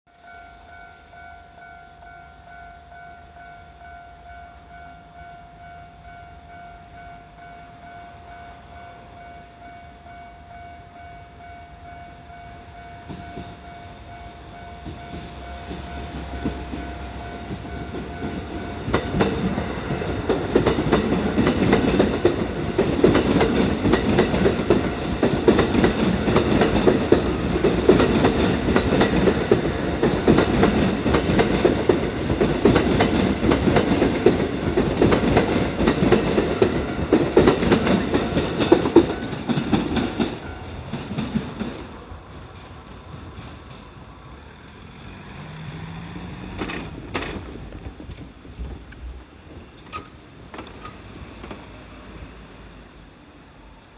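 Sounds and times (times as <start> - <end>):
electric train passing: 0.1 - 53.9
level crossing alarm ringing: 0.2 - 40.9
wheels clattering over rail joints: 14.8 - 51.9.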